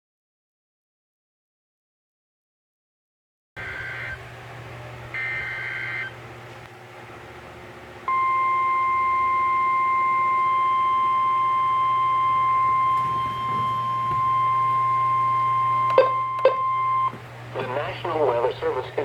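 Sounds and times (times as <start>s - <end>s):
data tone bursts: 3.6s - 4.2s, 5.2s - 6.1s, 8.1s - 17.2s
low hum: 3.6s - 19.0s
steady attention tone: 5.1s - 6.2s, 8.0s - 19.0s.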